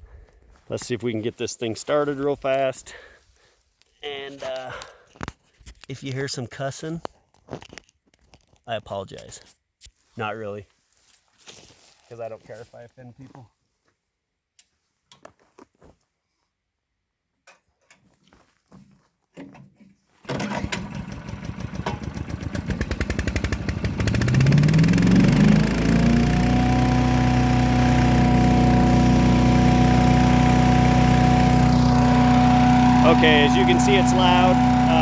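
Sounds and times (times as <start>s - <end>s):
chipper engine running: 20.3s - 35.0s
chipper rotor whine: 23.5s - 35.0s.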